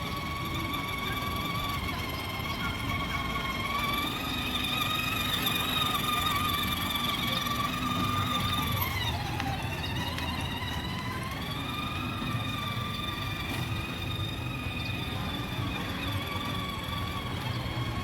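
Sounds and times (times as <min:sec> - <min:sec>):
toy car electric motor whine: 0:00.0 - 0:18.0
wheels rumbling on ground: 0:00.0 - 0:18.0.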